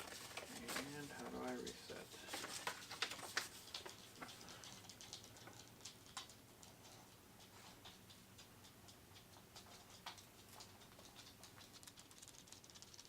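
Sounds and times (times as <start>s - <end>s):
faint small clicks and ticks: 0.0s - 13.0s.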